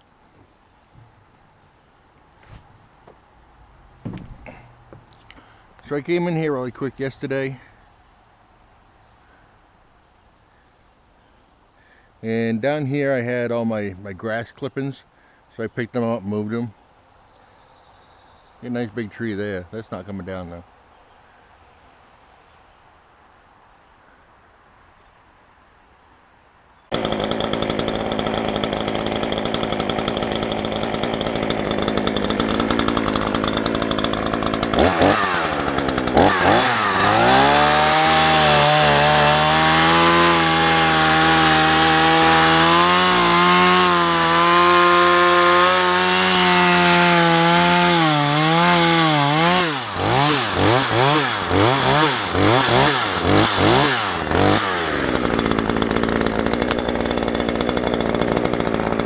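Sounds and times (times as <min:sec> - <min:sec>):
chainsaw idling and revving: 0:04.0 - 0:07.7, 0:26.9 - 0:59.0.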